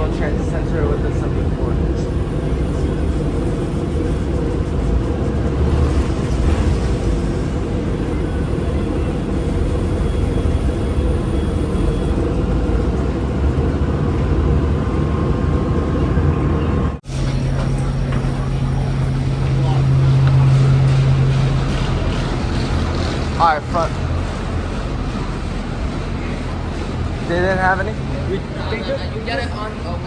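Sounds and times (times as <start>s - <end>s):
bus engine rumble: 0.0s - 30.0s.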